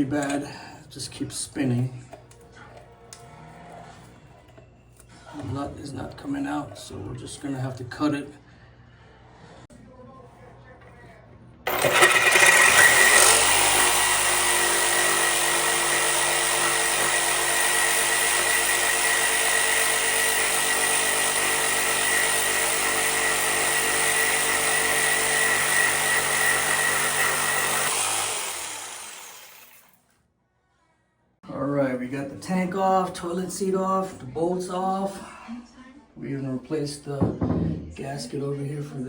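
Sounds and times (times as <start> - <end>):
power cutting tool whining: 11.7 - 29.9.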